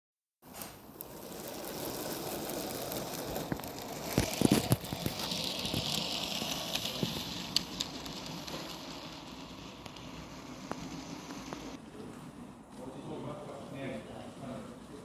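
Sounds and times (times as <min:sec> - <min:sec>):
model train running on track: 0:00.5 - 0:11.8.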